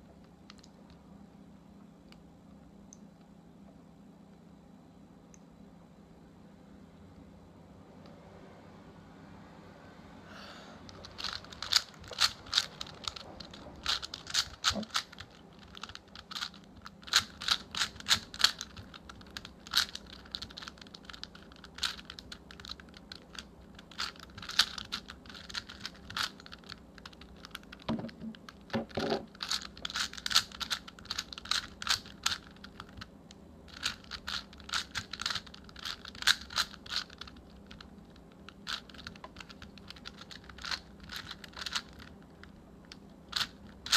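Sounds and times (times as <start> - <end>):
puzzle cube clicking: 10.9 - 33.1, 33.7 - 37.9, 38.5 - 42.5, 43.3 - 43.9.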